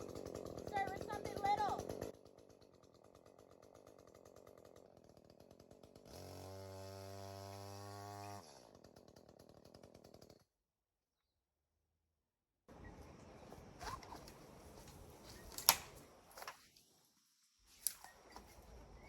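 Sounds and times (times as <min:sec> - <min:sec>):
chainsaw idling and revving: 0:00.0 - 0:10.5.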